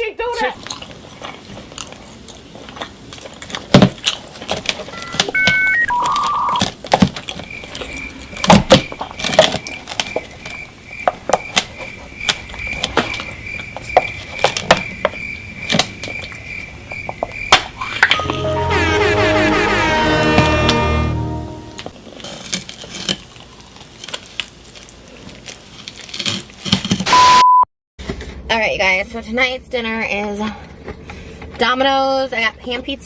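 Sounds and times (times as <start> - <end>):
electronic chime beeping: 5.0 - 6.6, 18.0 - 21.8
high tone beeping: 5.0 - 6.6, 17.8 - 21.9, 27.1 - 27.6.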